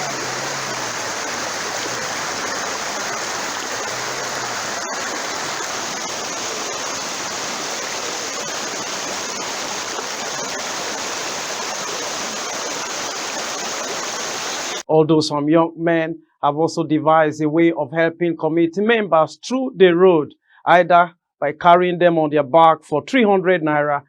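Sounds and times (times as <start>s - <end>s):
floodwater rushing: 0.0s - 14.8s.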